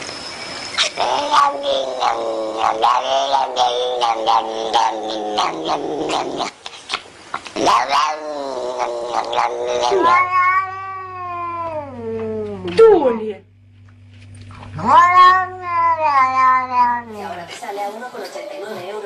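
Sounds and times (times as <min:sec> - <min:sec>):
cat yowling: 0:00.8 - 0:06.5, 0:07.6 - 0:12.6, 0:14.7 - 0:17.2.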